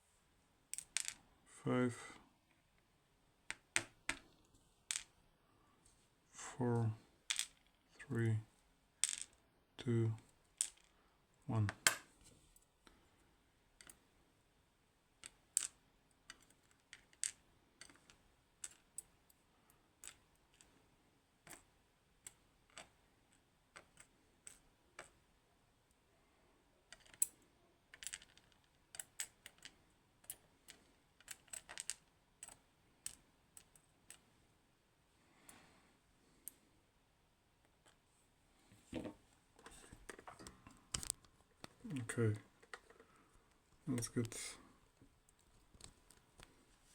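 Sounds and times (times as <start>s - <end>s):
small metal lock parts clicking: 26.9s - 34.2s.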